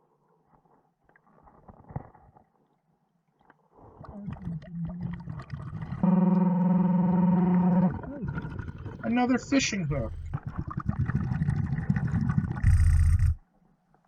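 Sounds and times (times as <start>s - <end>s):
bubbles: 4.0s - 13.4s
loud low buzzing tone: 6.0s - 7.9s, 12.6s - 13.4s
diver breathing underwater: 10.1s - 13.4s.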